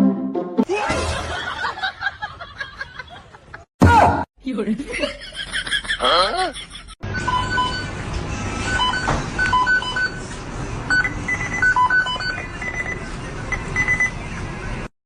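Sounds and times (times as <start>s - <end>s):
steady background noise: 7.1s - 14.9s
short electronic beeps: 10.9s - 14.2s.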